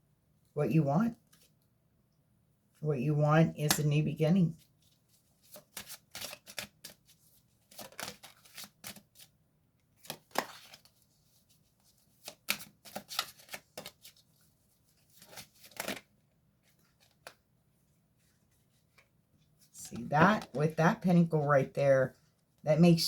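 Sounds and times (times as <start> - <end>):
cards being shuffled: 4.8 - 9.3, 10.0 - 14.3, 14.9 - 17.4.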